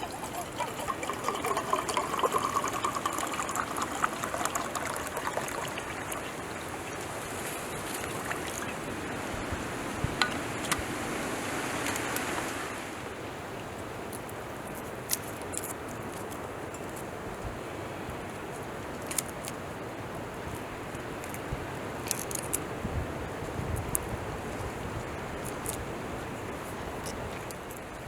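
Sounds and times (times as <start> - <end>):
liquid pouring and trickling: 0.0 - 8.9.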